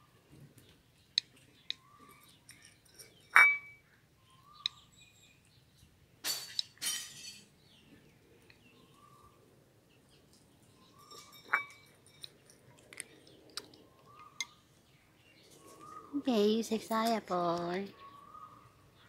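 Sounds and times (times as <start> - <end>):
sharp ringing clink: 3.2 - 3.8.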